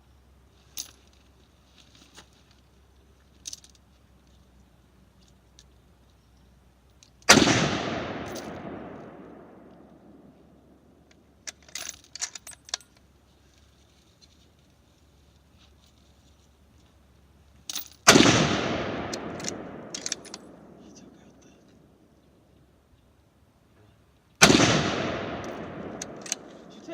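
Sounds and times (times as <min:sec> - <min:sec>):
gunshots with long echo: 0:07.3 - 0:10.8, 0:18.1 - 0:21.4, 0:24.4 - 0:26.9
sharp metallic clicks: 0:17.7 - 0:21.8, 0:24.4 - 0:26.9.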